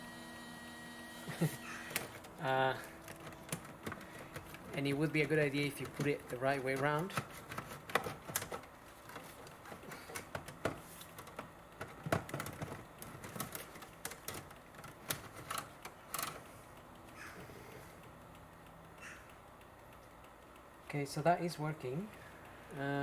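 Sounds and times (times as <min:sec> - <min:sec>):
plastic connectors clicking and knocking: 0:01.9 - 0:16.5.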